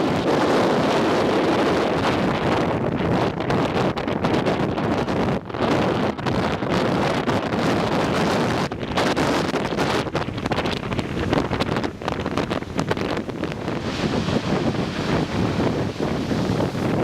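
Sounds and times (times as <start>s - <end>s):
wind buffeting microphone: 0.0s - 17.0s
ocean surf rushing: 8.8s - 17.0s.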